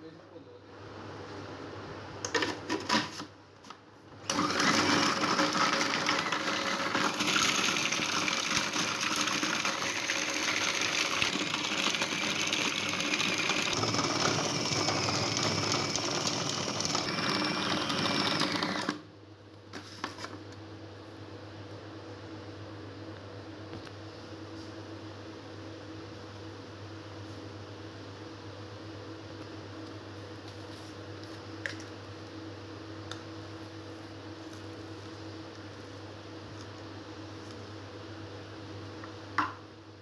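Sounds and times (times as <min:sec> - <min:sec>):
kitchen appliance motor whining: 0:04.2 - 0:19.0.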